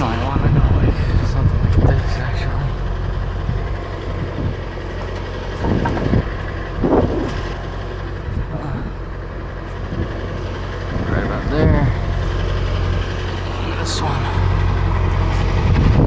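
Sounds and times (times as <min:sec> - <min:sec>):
truck engine humming: 0:00.0 - 0:16.0.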